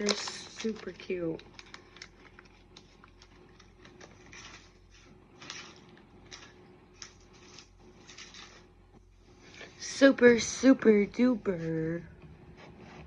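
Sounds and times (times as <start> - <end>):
packaging rustling: 0.0 - 8.8.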